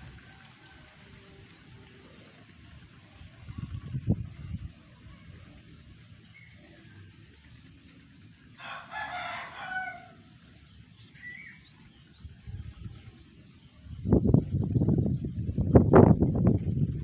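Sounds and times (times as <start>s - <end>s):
rooster crowing: 8.6s - 10.3s.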